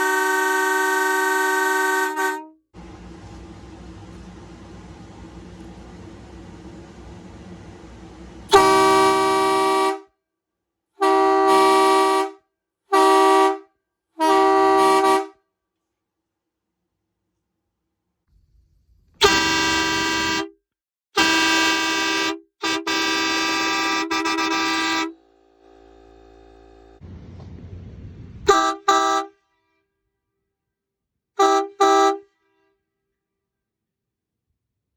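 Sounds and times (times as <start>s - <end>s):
truck horn blasts: 0.0s - 3.4s, 7.4s - 10.1s, 11.0s - 13.6s, 14.2s - 15.4s, 19.2s - 20.5s, 21.2s - 27.0s, 28.5s - 29.4s, 31.4s - 32.4s
faint low hum: 2.8s - 8.7s.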